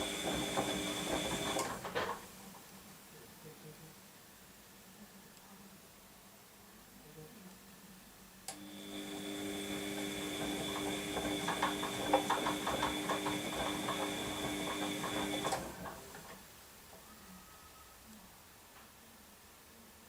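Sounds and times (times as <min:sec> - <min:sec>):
washing machine motor whine: 0:00.0 - 0:02.2, 0:08.5 - 0:16.4
washing machine click: 0:09.2 - 0:16.4.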